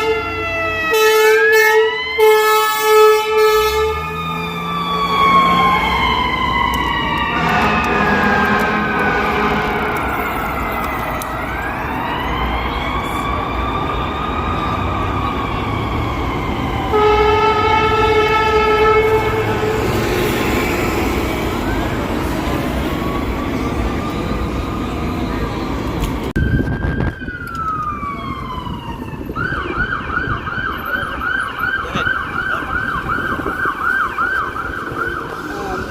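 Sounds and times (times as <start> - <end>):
siren yelp: 0.0 - 35.9
sirens wailing: 0.0 - 35.9
air horn blast: 0.9 - 4.1, 7.3 - 10.0, 16.9 - 20.0.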